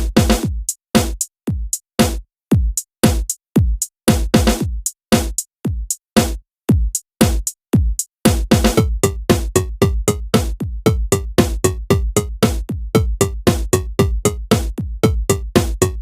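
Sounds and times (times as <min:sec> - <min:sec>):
deep drum machine kicks: 0:08.6 - 0:16.0
repeated synth figure: 0:08.8 - 0:16.0.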